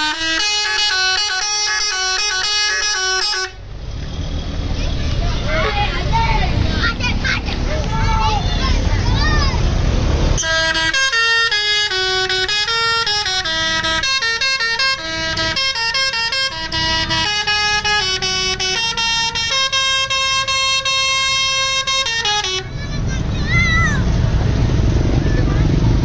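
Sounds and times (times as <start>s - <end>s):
musical air horn melody: 0.0s - 3.6s, 10.4s - 22.7s.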